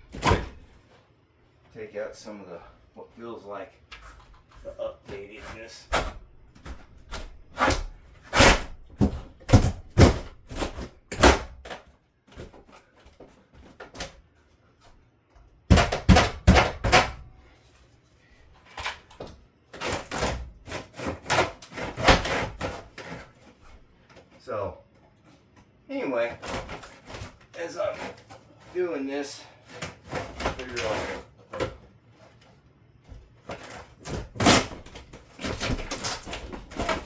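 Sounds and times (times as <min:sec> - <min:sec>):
demolition knocks and thuds: 0:00.0 - 0:00.8, 0:04.6 - 0:11.7, 0:15.7 - 0:17.3, 0:33.1 - 0:37.0.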